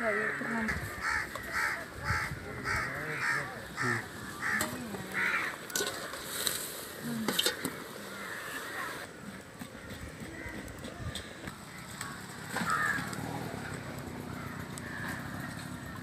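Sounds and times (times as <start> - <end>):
crow cawing: 0.0 - 6.1, 8.1 - 9.1, 12.0 - 13.1, 14.3 - 15.9.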